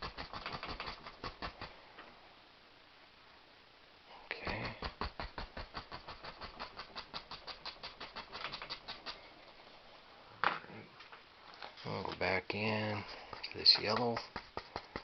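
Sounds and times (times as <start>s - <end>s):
paintbrush tapping: 12.8s - 15.0s.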